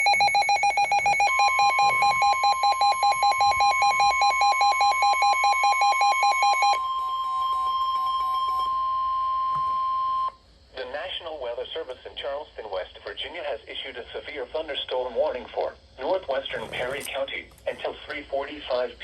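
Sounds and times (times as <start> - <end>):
rapid receiver beeps: 0.0 - 10.3
steady warning alarm tone: 0.0 - 10.4.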